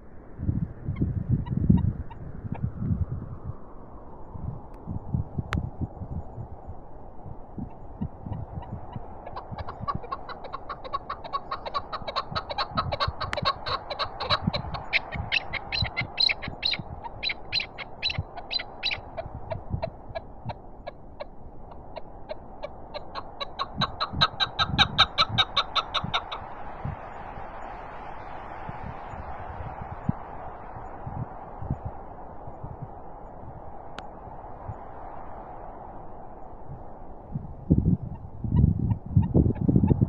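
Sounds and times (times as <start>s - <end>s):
wind on microphone: 0.0s - 40.0s
partridge clucking calls: 7.6s - 26.6s.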